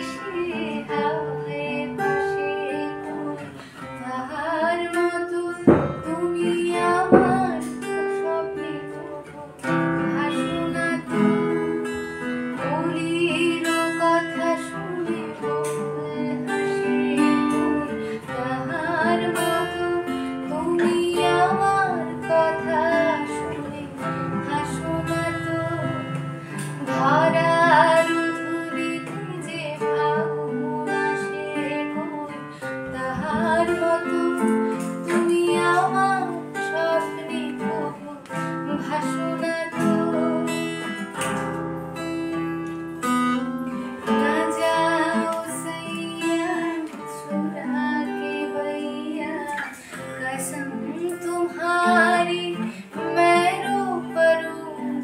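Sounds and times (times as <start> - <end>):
woman singing: 0.0 - 42.2, 43.0 - 55.0
acoustic guitar plucked and strummed: 0.0 - 55.0.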